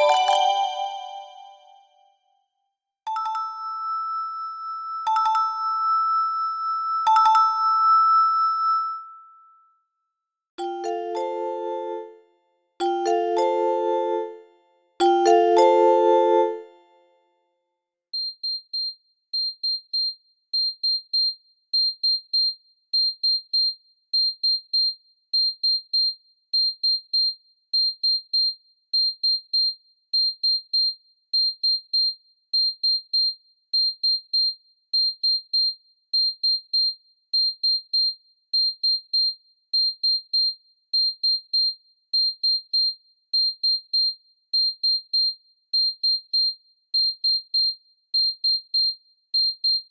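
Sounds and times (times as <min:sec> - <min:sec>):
high-pitched phone alert beeps: 0:00.0 - 0:01.7, 0:03.1 - 0:09.0, 0:10.6 - 0:12.1, 0:12.8 - 0:14.4, 0:15.0 - 0:16.8.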